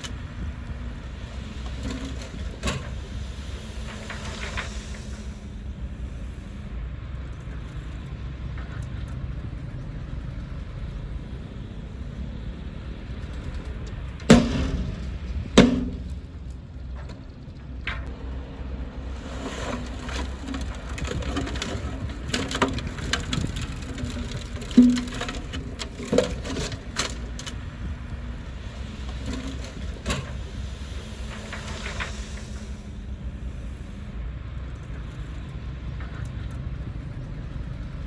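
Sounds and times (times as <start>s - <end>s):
bulldozer diesel engine: 0.0s - 38.0s
wood snapping: 14.3s - 16.4s.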